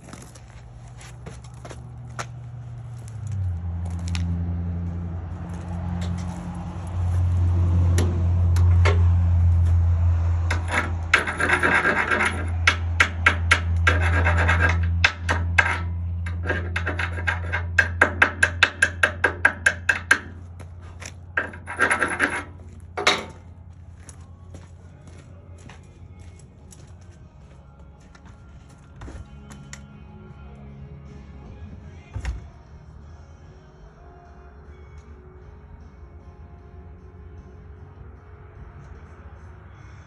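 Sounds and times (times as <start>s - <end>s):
low hum: 0.0s - 40.0s
wire brush scrubbing steel: 10.4s - 23.4s
hammer tapping on steel: 14.6s - 20.4s.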